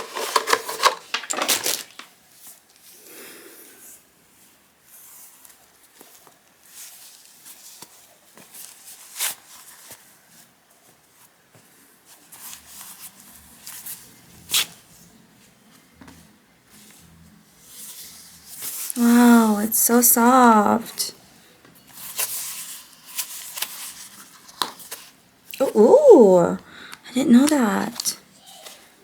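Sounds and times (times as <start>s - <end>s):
packaging rustling and crinkling: 0.0s - 2.6s, 22.0s - 25.2s.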